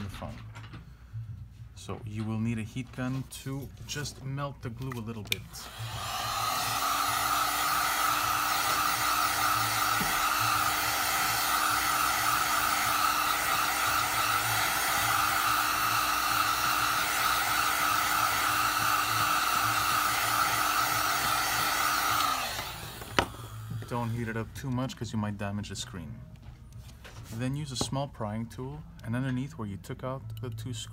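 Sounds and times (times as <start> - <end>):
heat gun blowing air: 5.5 - 24.2.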